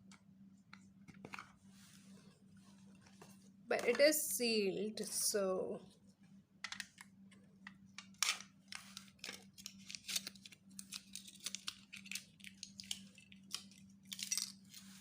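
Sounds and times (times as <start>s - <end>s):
faint electrical hum: 0.0s - 15.0s
plastic packaging being torn open: 8.1s - 14.9s.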